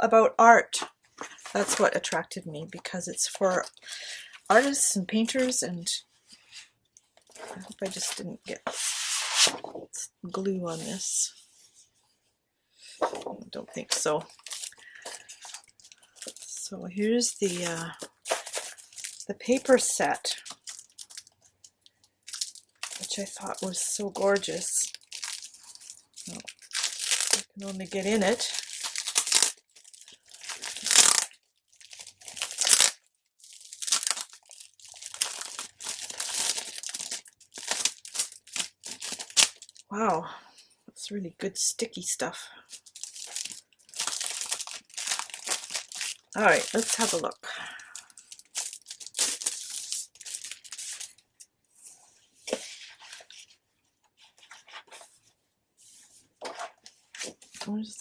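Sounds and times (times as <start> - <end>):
paper rustling and tearing: 7.3 - 9.8, 24.5 - 33.0
plastic packaging crinkling and tearing: 13.8 - 39.9, 42.7 - 51.2.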